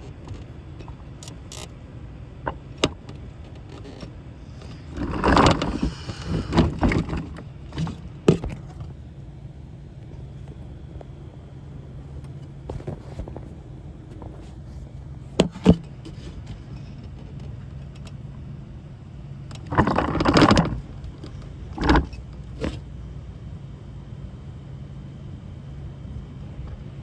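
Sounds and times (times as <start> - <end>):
phone rustling against microphone: 0.0 - 9.1, 9.8 - 17.6
steady low hum: 0.0 - 27.0.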